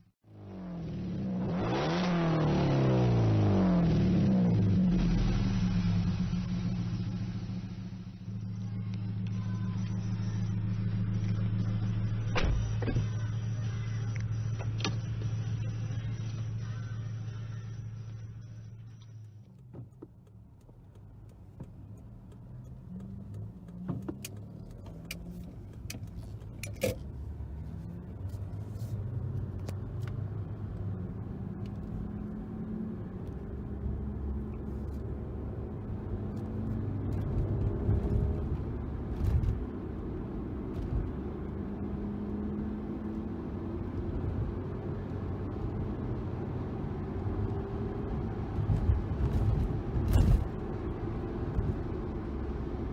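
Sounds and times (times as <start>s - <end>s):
car engine exhaust note: 2.4s - 19.7s
sharp clicks: 19.2s - 27.1s.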